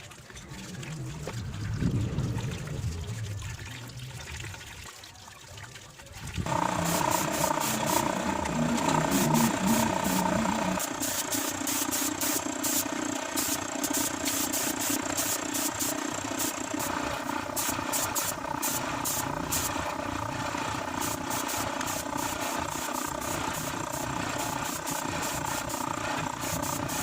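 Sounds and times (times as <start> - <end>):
low rumbling noise: 0.3 - 4.6, 6.4 - 10.8.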